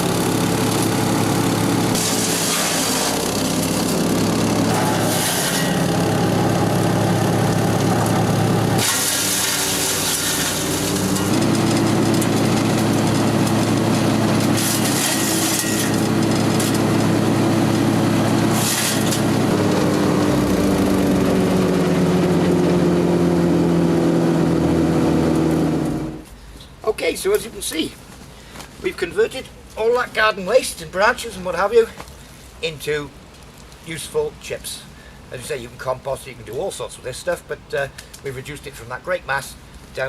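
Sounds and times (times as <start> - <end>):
wood being chipped: 0.0 - 21.4
wood chipper engine running: 0.0 - 26.3.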